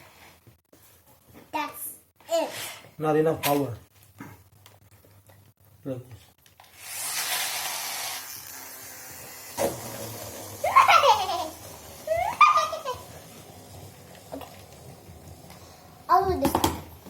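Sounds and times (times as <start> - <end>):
child laughing: 10.6 - 13.2.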